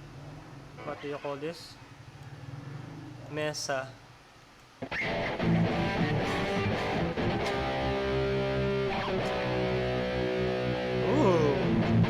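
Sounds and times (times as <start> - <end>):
electric guitar chords: 4.8 - 12.0.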